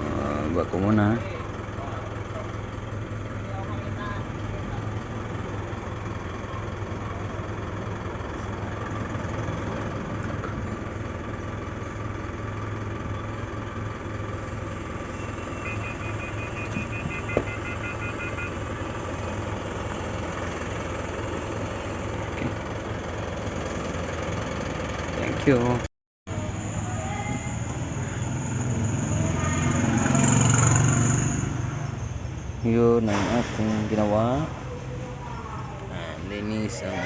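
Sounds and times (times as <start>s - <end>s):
diesel truck engine running: 0.0s - 37.0s
rapid high beeping: 15.1s - 18.6s.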